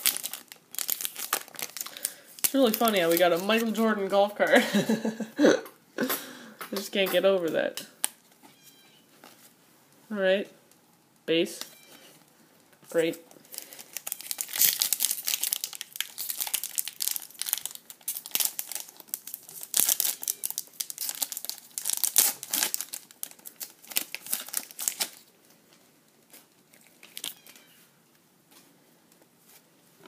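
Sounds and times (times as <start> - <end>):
foil wrapper crinkling and tearing: 0.0 - 3.8, 13.4 - 25.3, 26.3 - 27.8.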